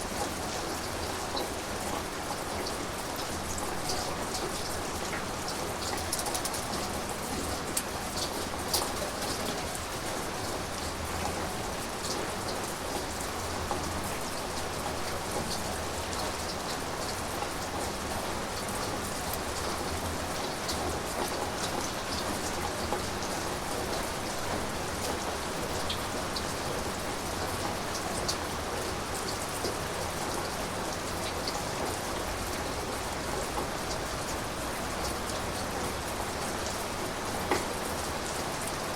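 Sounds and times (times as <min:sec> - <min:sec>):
raindrops ticking on hard surface: 0:00.1 - 0:38.8.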